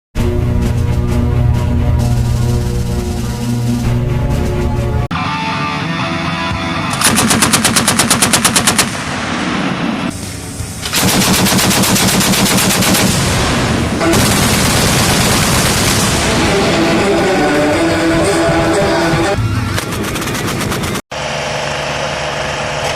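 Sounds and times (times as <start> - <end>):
autocannons firing rapid bursts: 6.9 - 17.1, 19.6 - 22.8.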